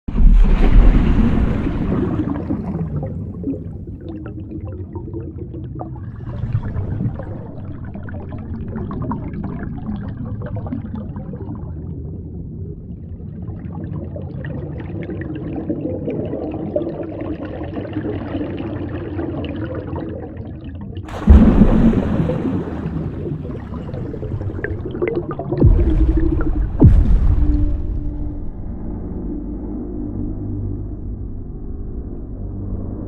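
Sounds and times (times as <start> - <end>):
bubbling and gurgling: 0.1 - 28.9
muffled underwater rumble: 0.1 - 33.0
loud rush of noise: 21.1 - 23.2.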